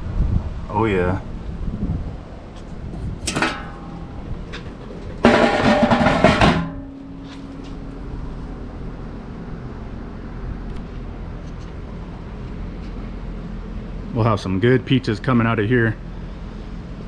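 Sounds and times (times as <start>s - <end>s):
sheet metal clatter and scrape: 2.6s - 8.0s
low ringing tone: 5.3s - 8.7s.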